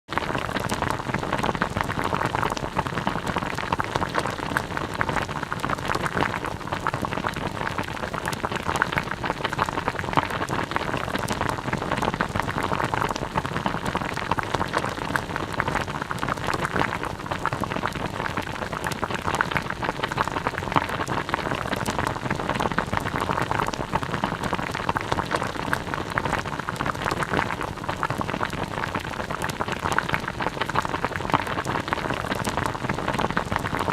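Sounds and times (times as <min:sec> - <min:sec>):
pot of food bubbling: 0:00.1 - 0:33.9.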